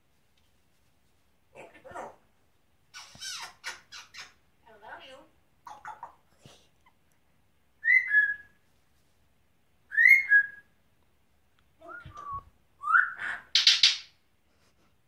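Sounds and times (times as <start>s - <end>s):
parrot whistling: 7.8s - 8.5s, 9.9s - 10.7s.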